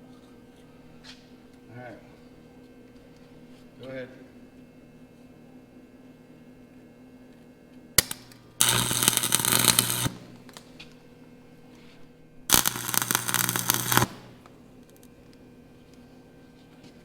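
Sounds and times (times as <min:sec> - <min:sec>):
welding arc crackling: 0:08.0 - 0:10.7, 0:12.5 - 0:14.5
welding rod tap: 0:08.0 - 0:10.7, 0:12.5 - 0:14.5.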